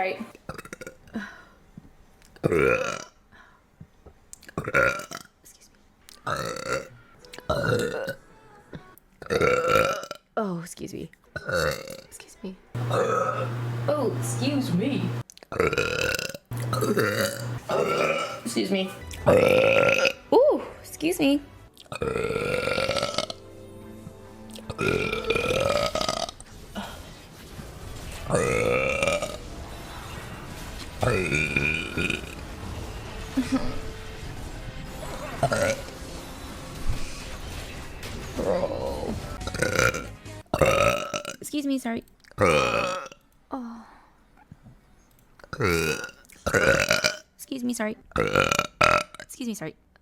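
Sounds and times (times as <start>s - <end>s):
young woman burping: 0.4s - 1.3s, 2.4s - 3.2s, 4.6s - 5.2s, 6.2s - 8.2s, 9.2s - 10.3s, 11.4s - 12.1s, 12.8s - 13.9s, 15.6s - 18.6s, 19.2s - 20.2s, 21.8s - 23.4s, 24.7s - 26.4s, 35.4s - 35.9s, 39.4s - 41.4s, 42.4s - 43.2s, 45.5s - 47.3s, 48.2s - 49.3s.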